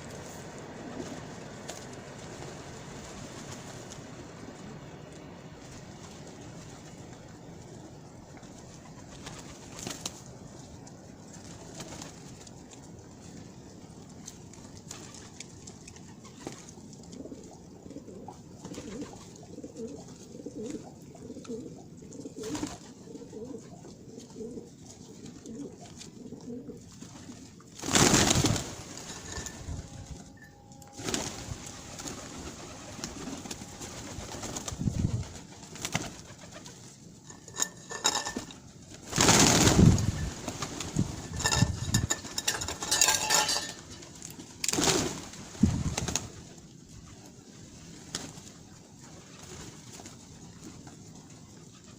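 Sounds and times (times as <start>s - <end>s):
pigeons cooing: 15.1s - 30.4s, 31.0s - 44.2s.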